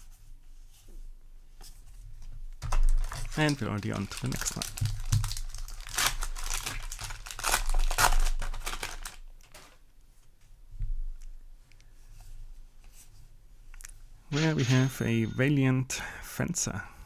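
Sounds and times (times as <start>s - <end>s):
wrapper crinkling and tearing: 2.6s - 9.8s.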